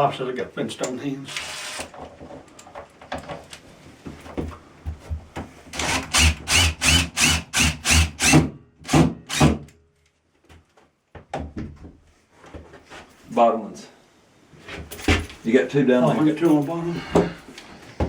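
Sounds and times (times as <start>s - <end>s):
screwdriver strokes: 1.3s - 1.9s, 5.8s - 8.4s.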